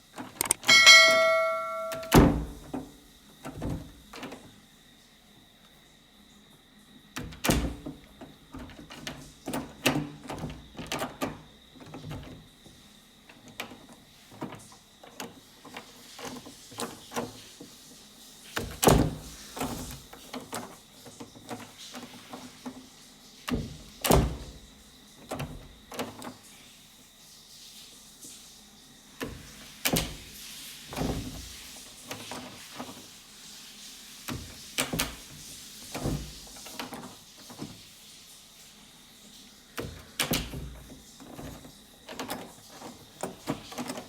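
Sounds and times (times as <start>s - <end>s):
door handle and latch clicks: 0.2s - 2.6s
door shutting thuds: 0.2s - 2.9s, 7.2s - 12.4s.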